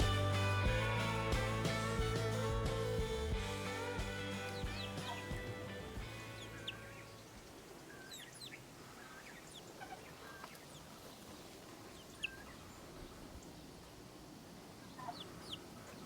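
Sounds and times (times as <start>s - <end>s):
music: 0.0s - 7.1s
faint bird chirps: 0.0s - 13.7s.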